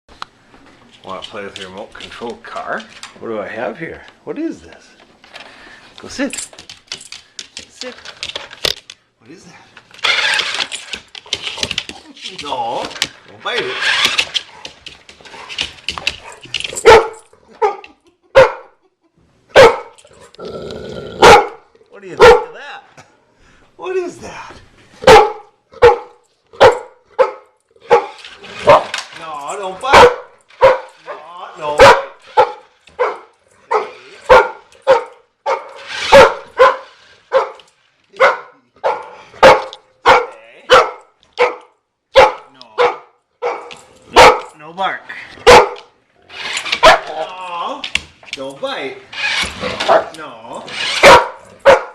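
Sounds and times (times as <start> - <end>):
dog barking: 16.2 - 18.8, 19.5 - 20.0, 21.2 - 21.6, 22.2 - 22.6, 25.0 - 28.9, 29.9 - 44.6, 45.4 - 46.0, 46.8 - 47.1, 49.8 - 50.2, 50.9 - 51.9.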